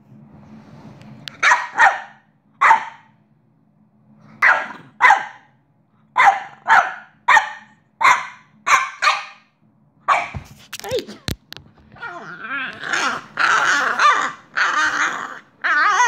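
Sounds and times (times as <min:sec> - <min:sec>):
dog barking: 0:01.4 - 0:03.1, 0:04.4 - 0:05.6, 0:06.2 - 0:09.5, 0:10.1 - 0:10.5.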